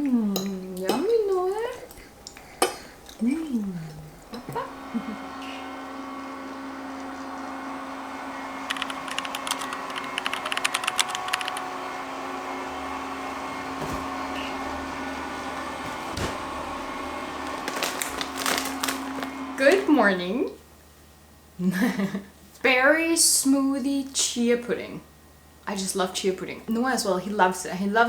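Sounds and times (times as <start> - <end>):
steady machine hum: 0.0 - 22.2.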